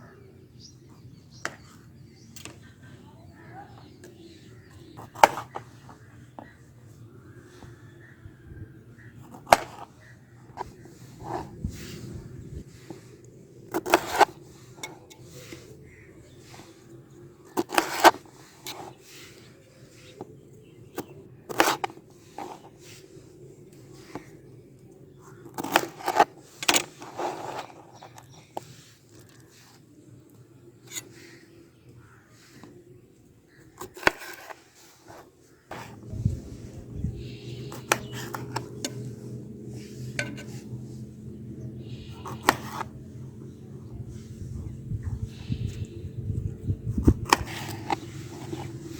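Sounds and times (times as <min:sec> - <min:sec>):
knife slicing through fruit: 0:13.7 - 0:14.4
steady low hum: 0:35.6 - 0:48.9.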